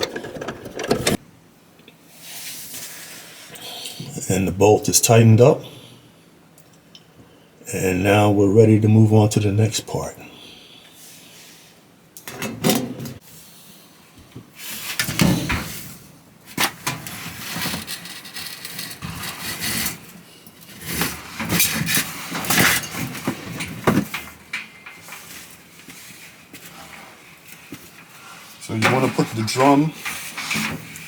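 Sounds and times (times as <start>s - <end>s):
dryer parts knocking and clunking: 21.4s - 25.3s, 28.7s - 31.0s.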